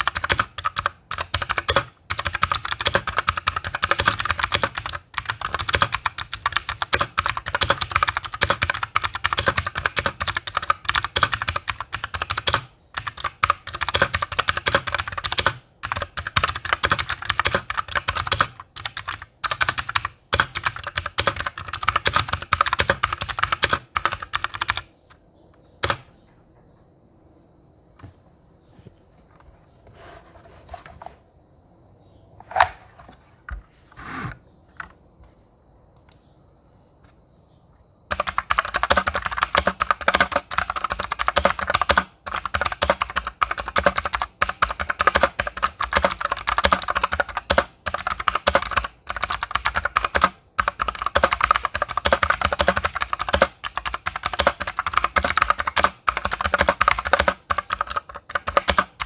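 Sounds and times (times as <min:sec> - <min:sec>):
clicky mechanical keyboard typing: 0:00.0 - 0:25.2, 0:25.8 - 0:26.1, 0:38.1 - 0:59.0.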